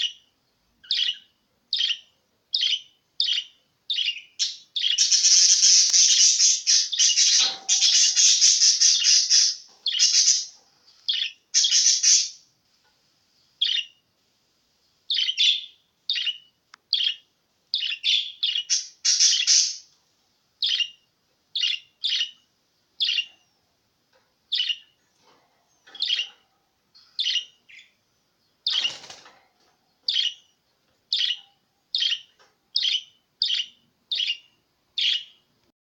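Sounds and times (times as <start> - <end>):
budgerigar chirping: 0.0 - 12.4, 13.6 - 14.0, 15.1 - 19.9, 20.6 - 21.0, 21.6 - 22.4, 23.0 - 23.4, 24.5 - 25.0, 26.0 - 26.4, 27.2 - 28.0, 28.6 - 29.1, 30.1 - 30.5, 31.1 - 35.4.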